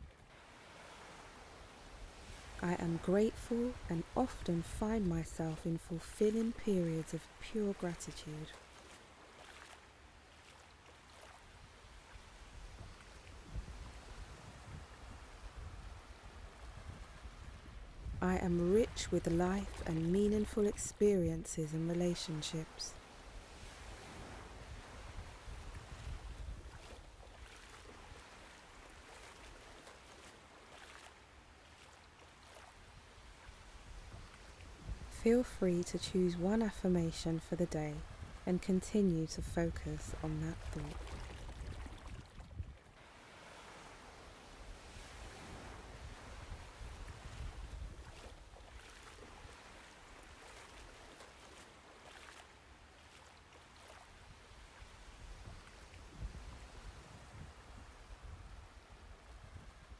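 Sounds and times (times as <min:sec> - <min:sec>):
trickling stream: 0:02.4 - 0:12.3, 0:26.6 - 0:44.3, 0:46.2 - 0:56.0
light water splashes: 0:07.3 - 0:13.5, 0:22.9 - 0:35.3, 0:40.6 - 0:58.2.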